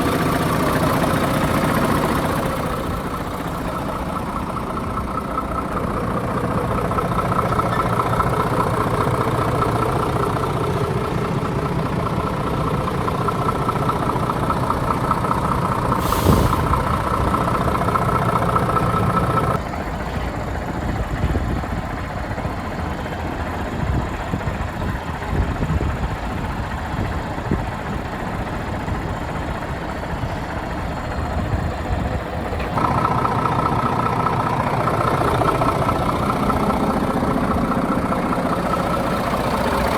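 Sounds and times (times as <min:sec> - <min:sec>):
diesel engine idling: 0:00.0 - 0:39.9
short hiss: 0:16.0 - 0:16.9.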